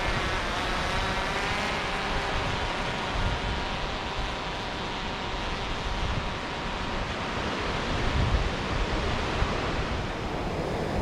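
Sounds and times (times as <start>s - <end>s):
small waves on the shore: 0.0s - 11.0s
wind buffeting microphone: 7.8s - 11.0s.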